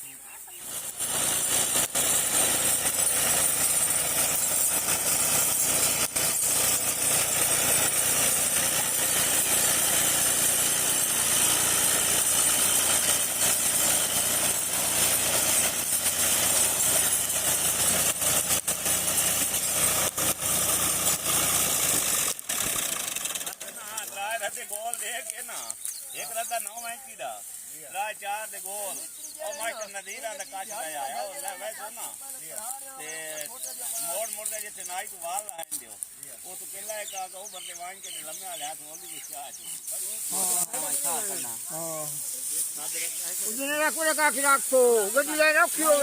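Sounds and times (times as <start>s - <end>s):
farm machinery engine running: 0.6s - 24.8s, 42.6s - 46.0s
strong steady hiss: 23.6s - 46.0s.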